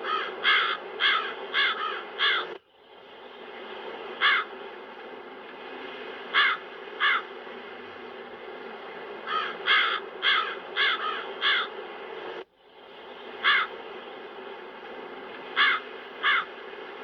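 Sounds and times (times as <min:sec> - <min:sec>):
crows cawing: 0:00.0 - 0:02.6, 0:04.2 - 0:04.5, 0:06.3 - 0:07.3, 0:09.2 - 0:11.7, 0:13.4 - 0:13.8, 0:15.6 - 0:16.5.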